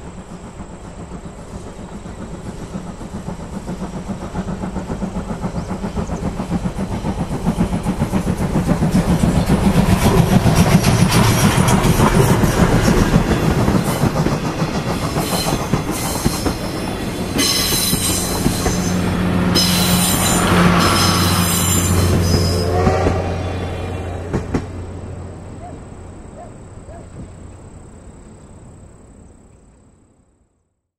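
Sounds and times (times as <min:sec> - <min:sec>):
steam locomotive exhaust beats: 0:00.0 - 0:29.5
wheels clattering over rail joints: 0:06.4 - 0:23.2.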